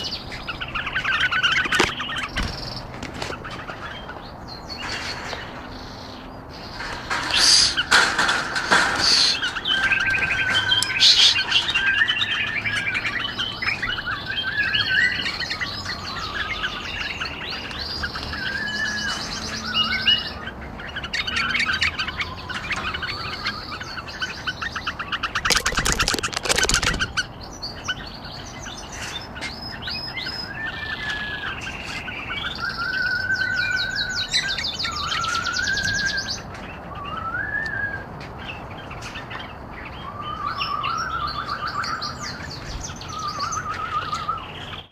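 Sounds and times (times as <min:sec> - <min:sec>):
birds chirping and whistling: 0:00.0 - 0:44.9
loud rattle of rapid clicks: 0:25.5 - 0:27.0.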